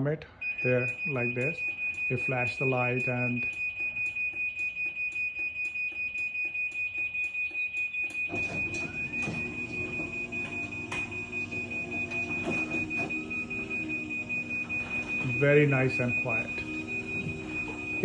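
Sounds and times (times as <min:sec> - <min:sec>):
rapid warning beeps: 0:00.4 - 0:18.0
garage door motor humming: 0:08.0 - 0:18.0
garage door clunks: 0:08.1 - 0:18.0.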